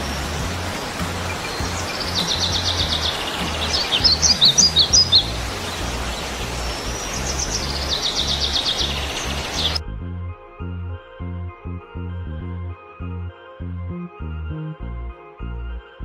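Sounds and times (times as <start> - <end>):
songbird trilling and chirping: 0.0 - 9.8
steady noise hiss: 0.0 - 9.8
background music beat: 0.0 - 16.0.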